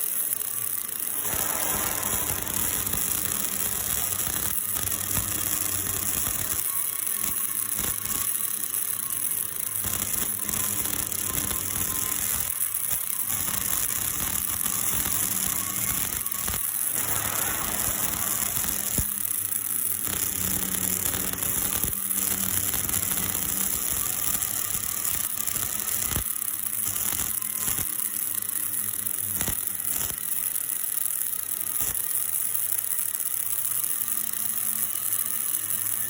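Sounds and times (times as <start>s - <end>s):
sharp welding pops: 0.0s - 36.0s
welding arc crackling and hissing: 0.0s - 36.0s.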